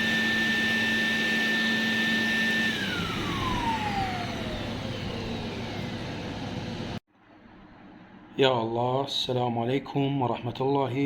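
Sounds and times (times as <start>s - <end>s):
electric blower-vacuum whining: 0.0s - 7.0s.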